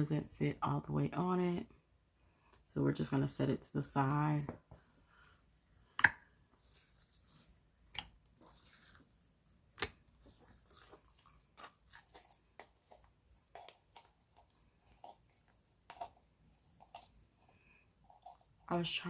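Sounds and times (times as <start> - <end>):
sticky slime crackles: 6.6 - 17.2.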